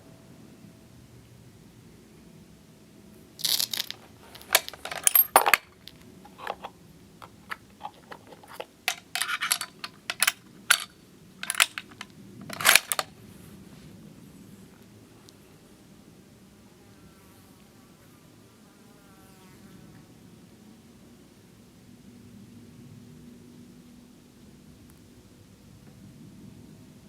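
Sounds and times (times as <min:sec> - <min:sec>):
light metallic clicks and clinks: 0:03.4 - 0:13.1.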